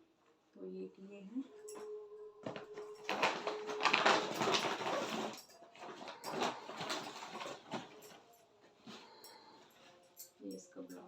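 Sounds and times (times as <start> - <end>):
fabric and packaging rustling: 1.4 - 11.0.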